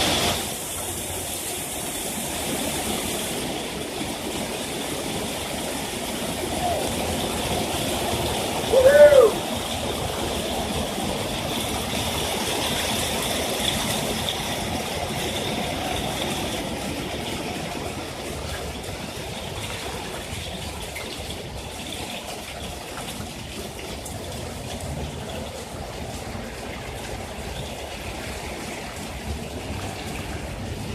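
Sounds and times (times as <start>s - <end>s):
hail clattering: 0.0s - 30.9s.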